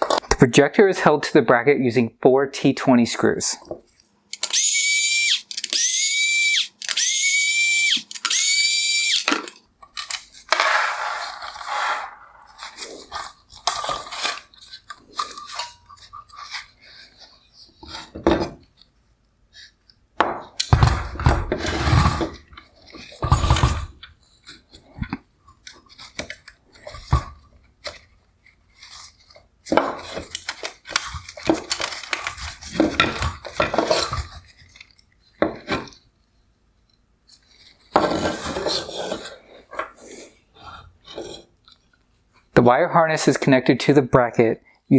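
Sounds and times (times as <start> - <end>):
electric screwdriver whining: 4.3 - 9.6
plastic and metal parts clattering: 4.3 - 10.9, 20.6 - 24.0, 29.7 - 34.9.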